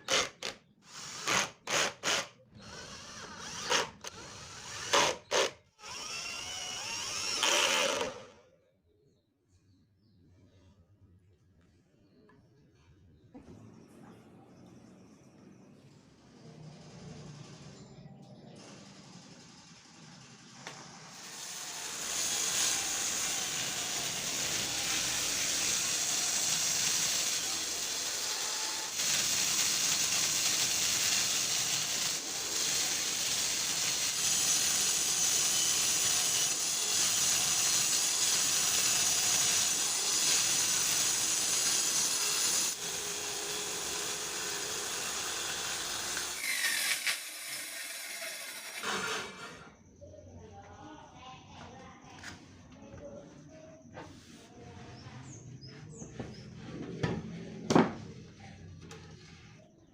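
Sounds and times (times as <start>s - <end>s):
power tool hissing on wood: 18.7s - 49.6s.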